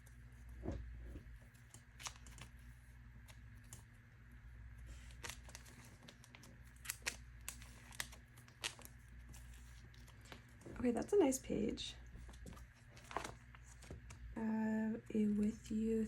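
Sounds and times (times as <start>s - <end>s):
low steady hum: 0.0s - 16.0s
plastic sleeves crinkling: 4.8s - 11.3s, 12.0s - 14.4s.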